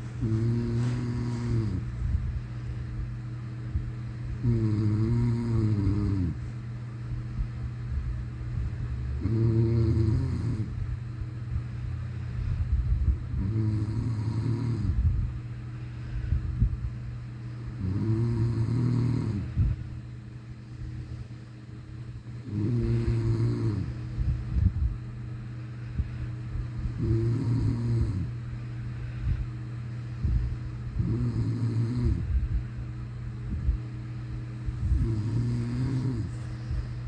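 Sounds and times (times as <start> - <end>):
person snoring: 0.0 - 2.2, 4.4 - 6.4, 9.2 - 10.7, 13.3 - 15.1, 17.8 - 19.7, 22.4 - 24.3, 26.8 - 28.3, 30.2 - 32.3, 34.8 - 37.0.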